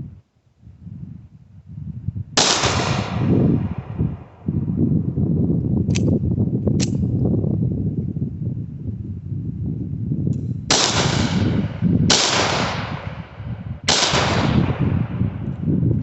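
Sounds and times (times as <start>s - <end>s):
low rumble: 0.0s - 16.0s
pistol shots with echo: 2.4s - 4.4s, 10.7s - 15.4s.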